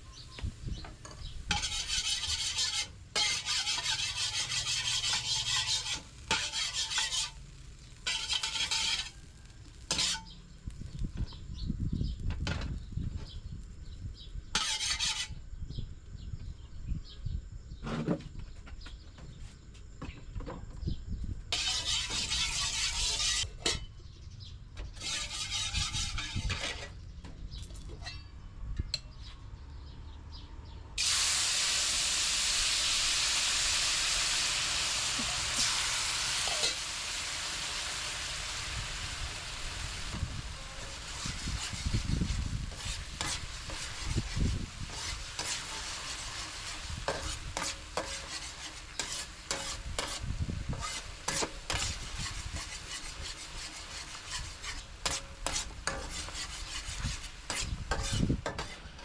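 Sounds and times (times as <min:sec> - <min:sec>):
food sizzling in a hot pan: 0:00.0 - 0:11.1, 0:21.5 - 0:23.5, 0:25.0 - 0:26.6, 0:31.0 - 0:59.0
utensil scraping and clicking in pan: 0:01.0 - 0:10.4, 0:14.6 - 0:15.3, 0:21.5 - 0:23.9, 0:24.8 - 0:27.0, 0:40.1 - 0:59.0.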